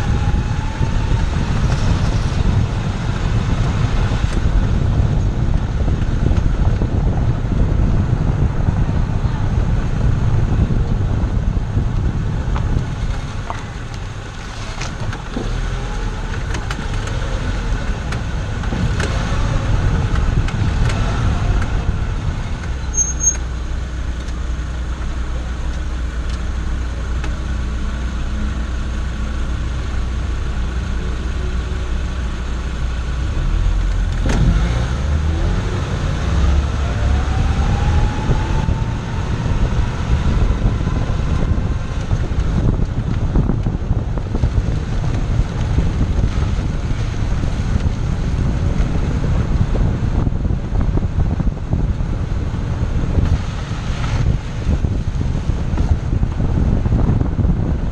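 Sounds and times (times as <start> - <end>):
engine whine rising in pitch: 0.0 - 5.9, 27.6 - 42.8
car engine and road rumble: 0.0 - 57.9.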